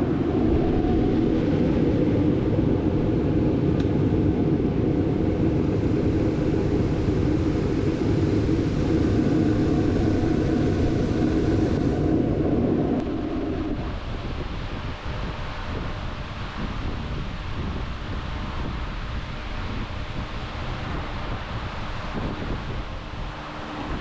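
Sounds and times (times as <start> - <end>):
gas forge burners rushing: 0.0 - 16.6.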